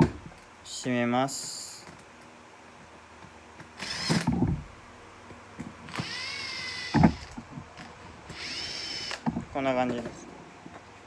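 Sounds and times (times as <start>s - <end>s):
cordless drill motor whining: 3.8s - 4.4s, 5.9s - 7.4s, 8.3s - 9.3s.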